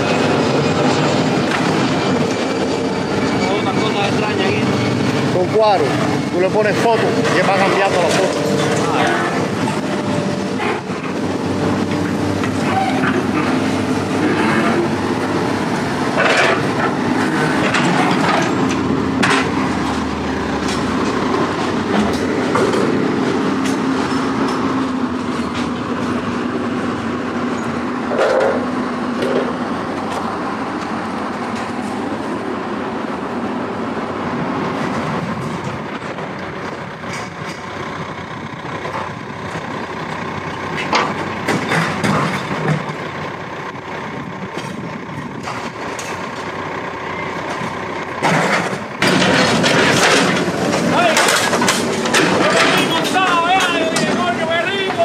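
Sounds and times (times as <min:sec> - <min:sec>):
diesel machinery running: 0:00.0 - 0:55.0
metal clanks and knocks: 0:05.3 - 0:11.2, 0:16.1 - 0:26.1, 0:27.6 - 0:30.2, 0:40.8 - 0:43.0, 0:47.5 - 0:54.3.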